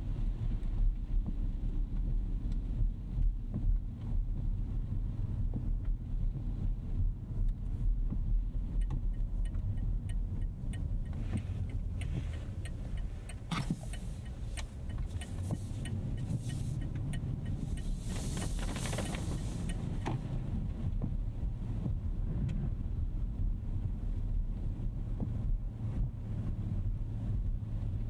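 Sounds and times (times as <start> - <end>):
car cabin low rumble: 0.0 - 28.0
light regular ticking: 8.7 - 20.6
hissing tyre spray: 11.1 - 20.3.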